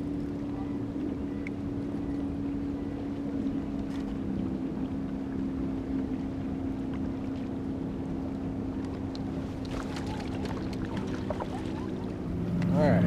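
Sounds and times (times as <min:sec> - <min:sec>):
boat motor droning: 0:00.0 - 0:13.0
small splashes: 0:03.1 - 0:12.3.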